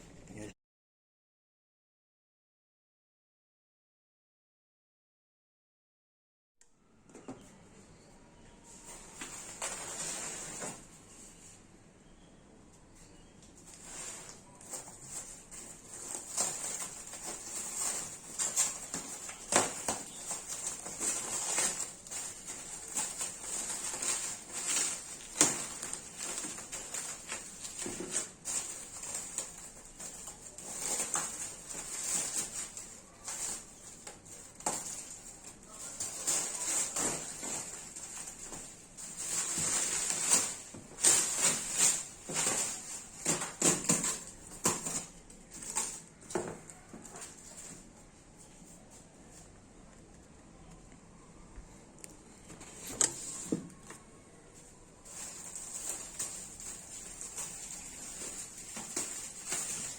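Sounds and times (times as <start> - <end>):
packaging rustling and crinkling: 8.7 - 11.6, 13.5 - 49.6, 52.3 - 54.0, 54.6 - 59.9.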